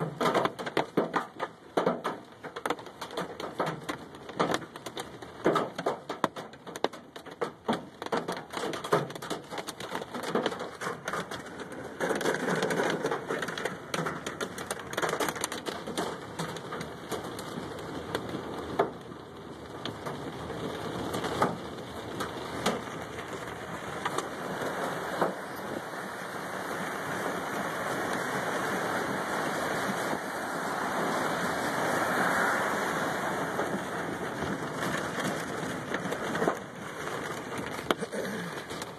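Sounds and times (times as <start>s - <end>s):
hail hitting truck roof: 0.0s - 38.9s.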